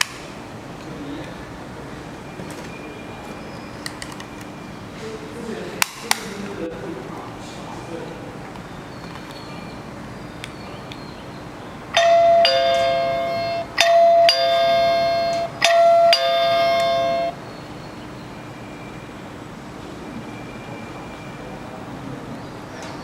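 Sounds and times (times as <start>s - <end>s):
doorbell two-tone ding-dong: 12.0s - 17.4s.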